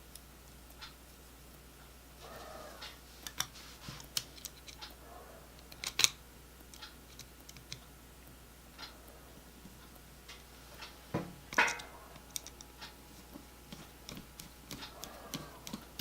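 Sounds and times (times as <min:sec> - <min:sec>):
metal tools clicking and tapping: 0:11.5 - 0:13.0.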